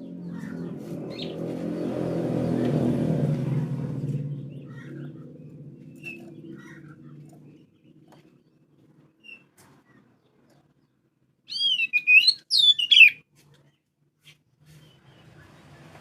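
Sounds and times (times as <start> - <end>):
bird chirps: 0.0 - 2.7, 4.1 - 8.3, 11.5 - 13.2
passing vehicle engine hum: 0.0 - 9.1, 14.7 - 16.0.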